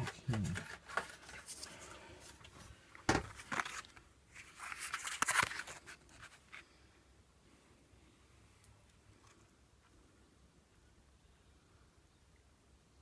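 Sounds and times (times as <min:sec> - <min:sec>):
packaging rustling and crinkling: 0:00.0 - 0:06.7.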